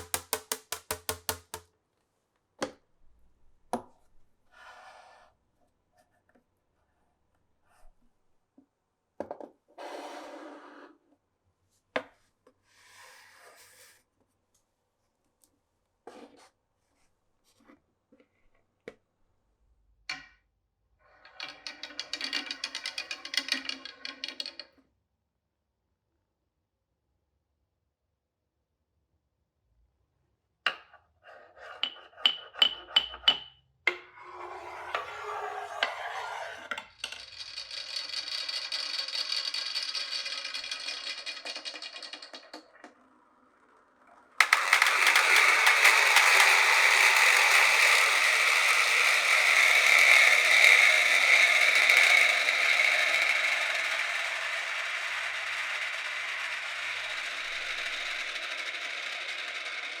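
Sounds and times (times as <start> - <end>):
marbles clicking on wooden track: 0.0 - 1.6, 21.3 - 24.8, 34.5 - 43.0, 43.6 - 60.0
marbles rolling along track: 0.0 - 1.6, 21.1 - 24.8, 34.2 - 60.0.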